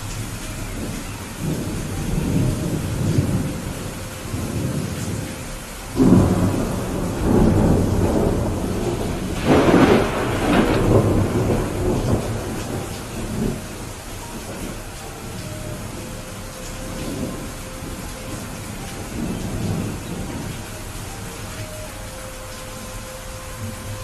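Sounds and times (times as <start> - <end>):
rolling thunder: 0.0 - 22.2
steady rain: 0.0 - 24.0
sharp thunderclap: 6.0 - 13.8.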